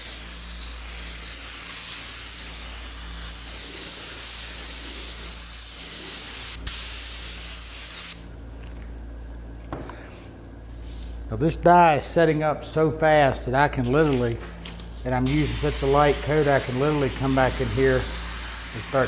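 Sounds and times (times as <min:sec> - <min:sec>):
spray gun hissing: 0:00.0 - 0:08.3, 0:15.3 - 0:19.0
steady low hum: 0:00.0 - 0:19.0.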